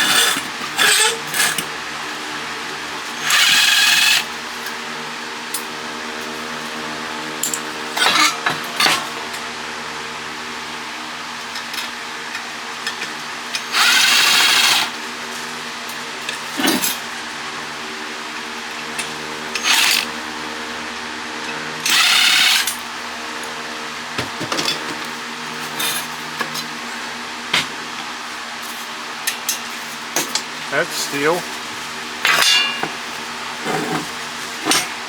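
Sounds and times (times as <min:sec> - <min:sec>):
power drill spinning: 0:00.0 - 0:06.9, 0:10.6 - 0:15.6, 0:18.3 - 0:20.6, 0:21.8 - 0:24.1, 0:24.7 - 0:35.0.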